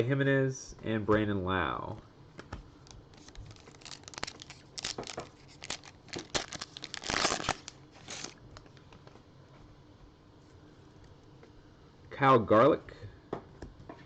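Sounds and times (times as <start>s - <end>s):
wrapper tearing and crinkling: 3.1s - 8.4s.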